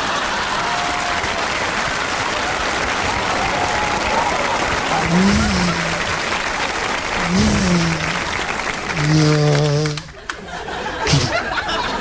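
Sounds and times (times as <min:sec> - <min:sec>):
audience laughing: 0:00.0 - 0:00.9, 0:03.3 - 0:12.0
audience applauding: 0:00.0 - 0:12.0
man making vocal sound effects: 0:04.9 - 0:06.3, 0:07.2 - 0:10.2.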